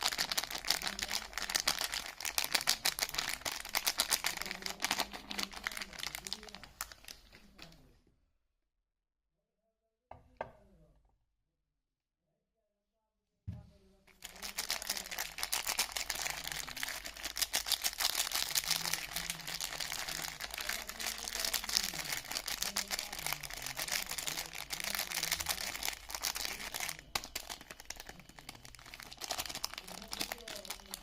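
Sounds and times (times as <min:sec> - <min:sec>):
soap packaging crinkling: 0:00.0 - 0:07.8, 0:14.1 - 0:31.0.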